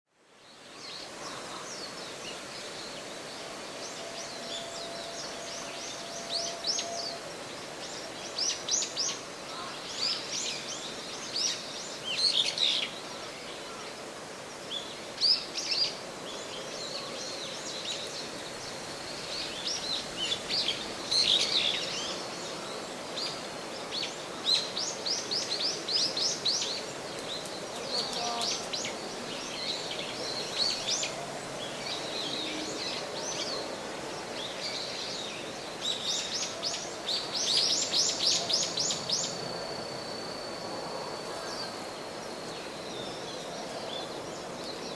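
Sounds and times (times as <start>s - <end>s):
steady outdoor hiss: 0.1s - 44.9s.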